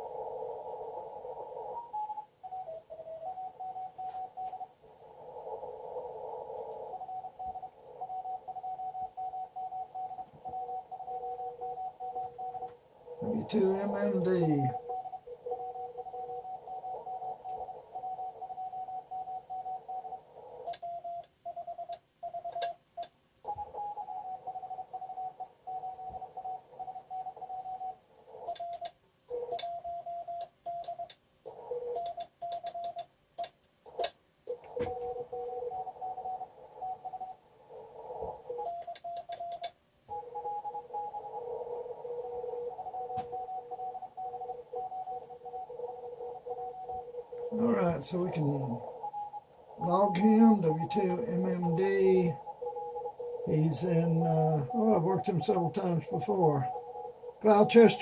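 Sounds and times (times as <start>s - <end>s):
radio band noise: 0.0s - 21.7s, 34.5s - 38.9s, 40.1s - 58.0s
morse code tones: 6.6s - 58.0s
sharp clicks: 20.6s - 23.6s, 28.5s - 29.8s, 30.4s - 34.8s, 38.6s - 40.2s.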